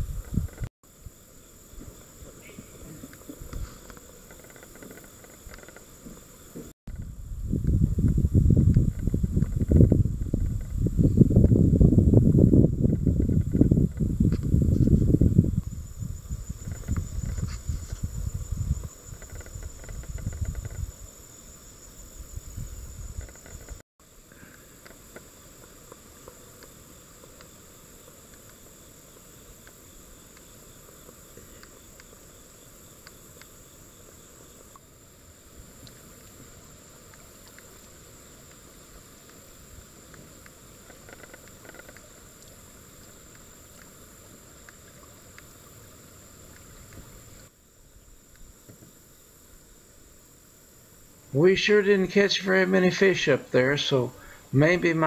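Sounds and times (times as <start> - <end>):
insects chirring: 0.0 - 55.0
faint clicks: 40.0 - 44.0.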